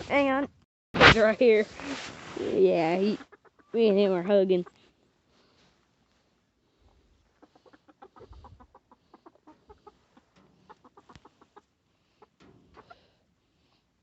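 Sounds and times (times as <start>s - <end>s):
chickens clucking: 3.0s - 5.0s, 6.8s - 13.8s.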